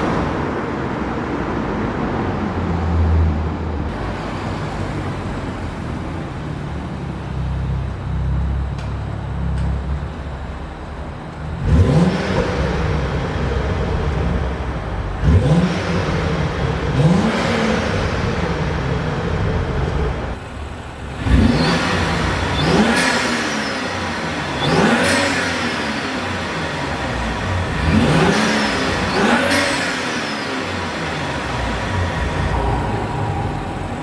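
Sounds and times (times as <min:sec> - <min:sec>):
engine revving: 0:11.4 - 0:20.4, 0:21.1 - 0:34.0.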